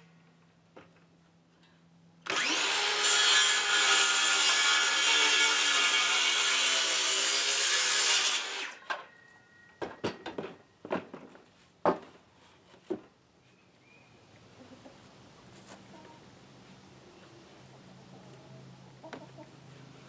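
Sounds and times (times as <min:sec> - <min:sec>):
saw cutting wooden board: 0:02.3 - 0:08.8.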